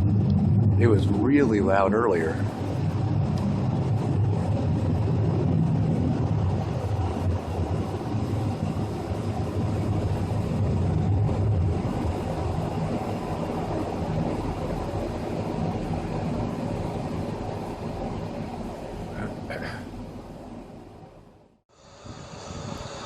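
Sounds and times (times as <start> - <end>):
low droning rumble from sky: 0.0 - 23.0.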